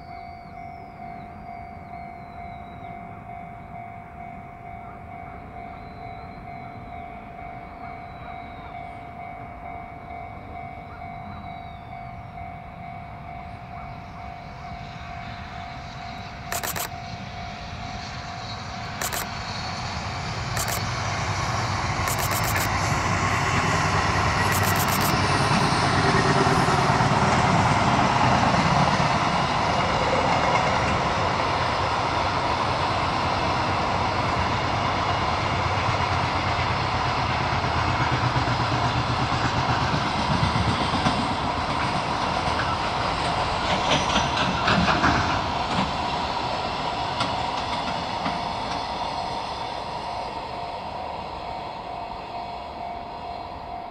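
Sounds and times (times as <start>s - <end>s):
level crossing alarm: 0.0s - 19.8s, 20.6s - 20.8s, 22.0s - 22.7s, 24.4s - 25.3s, 48.5s - 53.9s
freight train rumbling past: 0.0s - 53.9s.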